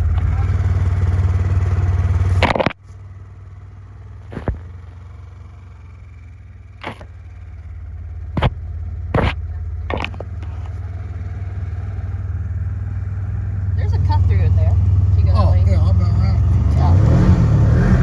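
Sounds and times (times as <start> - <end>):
vehicle engine droning: 0.0 - 18.0
short knocks or clatters: 4.3 - 4.8, 8.4 - 8.6, 9.2 - 10.7.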